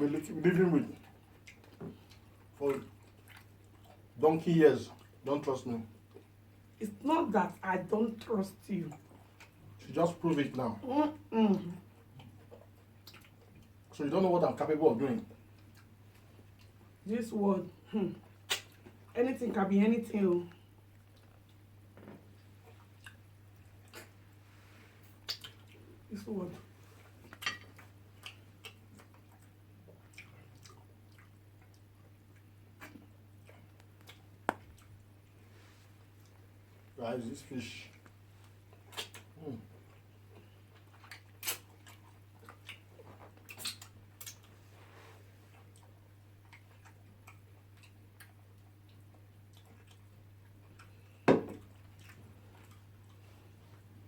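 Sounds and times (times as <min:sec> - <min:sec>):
faint low hum: 0:00.0 - 0:54.0
wet mouth smacks while chewing: 0:03.0 - 0:04.0, 0:12.1 - 0:13.7, 0:18.2 - 0:19.0, 0:22.4 - 0:24.2, 0:25.0 - 0:25.9, 0:27.2 - 0:35.4, 0:37.9 - 0:44.6, 0:45.5 - 0:53.2.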